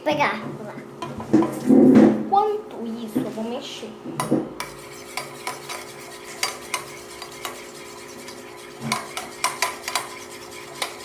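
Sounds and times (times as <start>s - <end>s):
clicks and scrapes against container: 4.6s - 11.0s
utensil stirring sticky slime: 4.6s - 11.0s.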